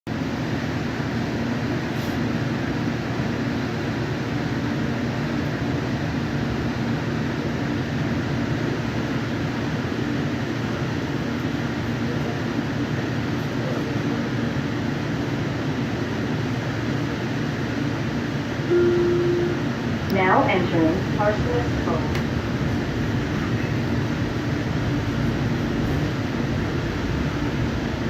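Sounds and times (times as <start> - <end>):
train rumbling: 0.1 - 28.0
faint hum: 16.5 - 28.0.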